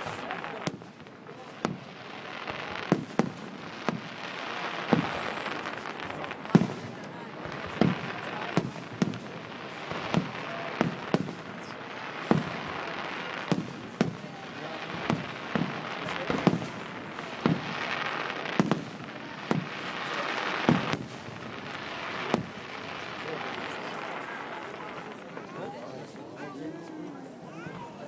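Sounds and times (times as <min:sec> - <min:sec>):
fireworks bangs: 0:00.0 - 0:26.2.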